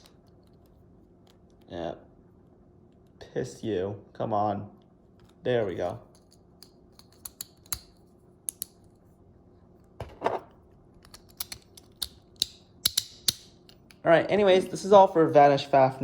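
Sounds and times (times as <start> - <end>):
plastic parts clicking: 11.0 - 14.0.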